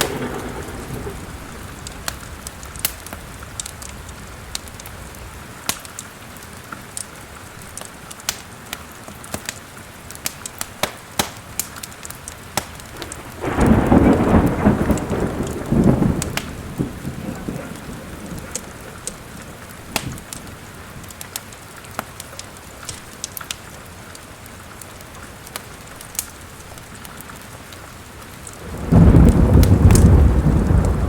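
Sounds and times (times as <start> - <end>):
loud roll of thunder: 0.0 - 5.4, 12.8 - 20.6, 28.6 - 31.0
fire crackling with sharp pops: 0.0 - 31.0
steady rain: 0.0 - 31.0.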